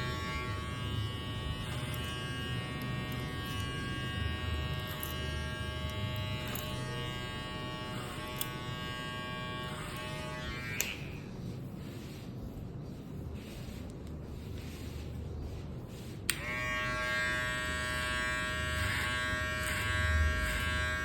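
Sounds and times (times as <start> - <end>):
electric hair clipper buzzing: 0.0 - 11.2, 16.3 - 21.0.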